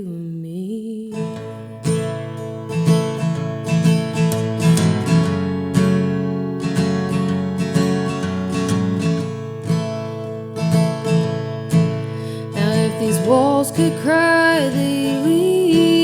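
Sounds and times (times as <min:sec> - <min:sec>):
acoustic guitar strumming: 0:01.1 - 0:16.0
person singing: 0:12.5 - 0:16.0.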